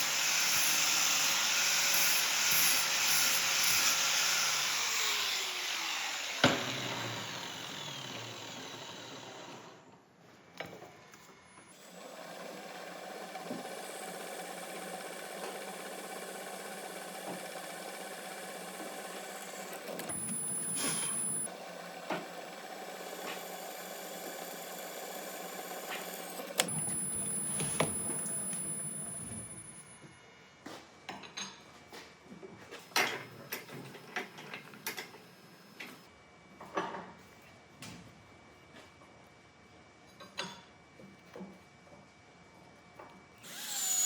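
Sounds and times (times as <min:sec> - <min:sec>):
power tool motor grinding: 0:00.0 - 0:09.8, 0:11.8 - 0:21.5, 0:22.2 - 0:29.9, 0:43.4 - 0:44.0.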